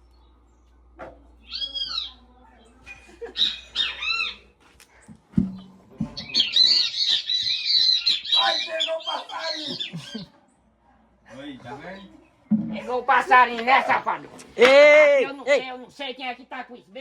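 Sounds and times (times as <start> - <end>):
bird calls from loudspeaker: 1.4 - 2.2, 6.1 - 10.3
low thump: 5.3 - 6.3
dense high chirping: 5.5 - 10.2.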